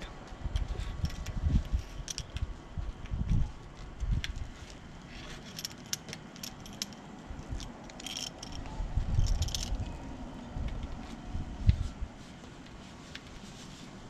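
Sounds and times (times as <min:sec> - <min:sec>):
handling clicks taps and rattles: 0:05.4 - 0:09.8.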